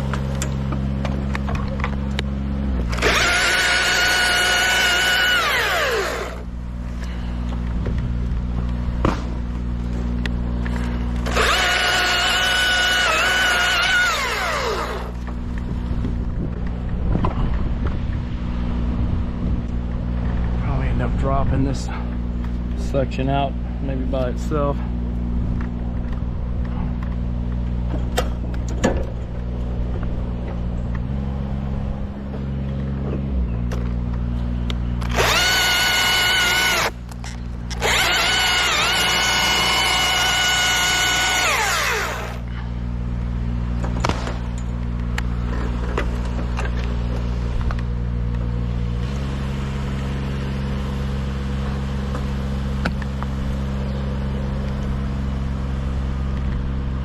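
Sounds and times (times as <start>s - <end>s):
chainsaw idling and revving: 2.8s - 6.5s, 11.2s - 15.2s, 35.0s - 37.0s, 37.7s - 42.5s.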